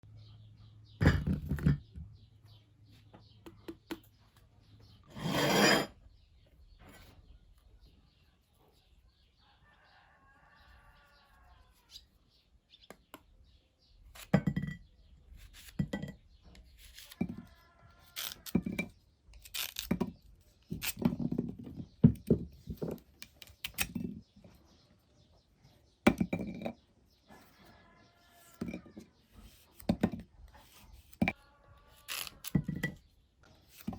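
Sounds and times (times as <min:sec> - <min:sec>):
hard objects knocking and clinking: 0:26.0 - 0:26.9, 0:32.4 - 0:33.1.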